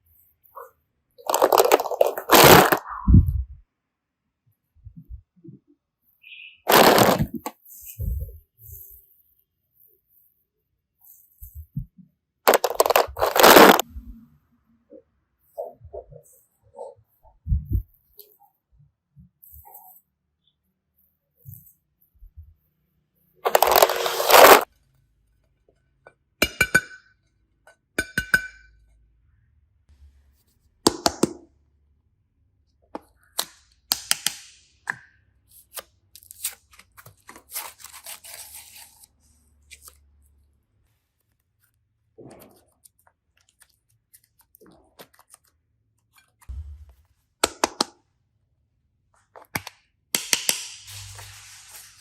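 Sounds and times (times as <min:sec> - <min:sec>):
crinkling and rustling: 0:01.2 - 0:03.3, 0:06.7 - 0:09.2, 0:12.5 - 0:13.9, 0:23.4 - 0:24.7, 0:35.6 - 0:47.2.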